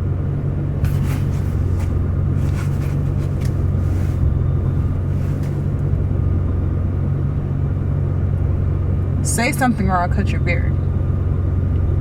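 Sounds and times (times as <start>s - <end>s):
car cabin low rumble: 0.0s - 12.0s
faint rustles: 0.8s - 5.9s.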